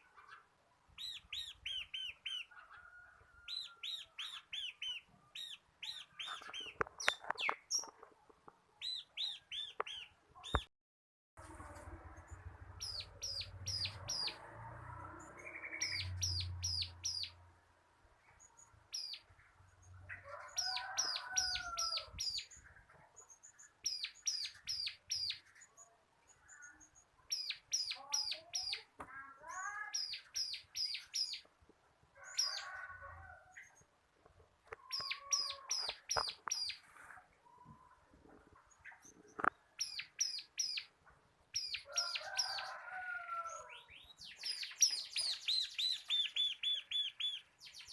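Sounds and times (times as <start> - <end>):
bird singing high chirps: 1.0 - 2.6, 3.4 - 7.9, 8.8 - 10.7, 12.2 - 14.4, 15.1 - 17.4, 18.4 - 31.5, 34.8 - 36.8, 38.7 - 42.8, 43.5 - 47.9.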